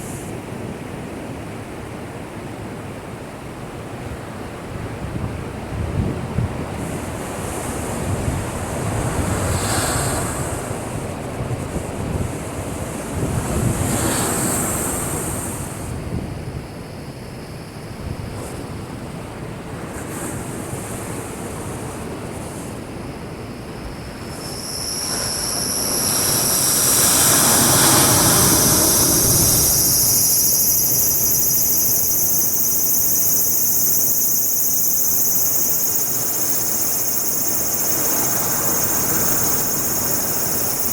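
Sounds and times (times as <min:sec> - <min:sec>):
sea surf breaking: 0:24.0 - 0:40.9
steady high shrill sound: 0:24.2 - 0:40.9.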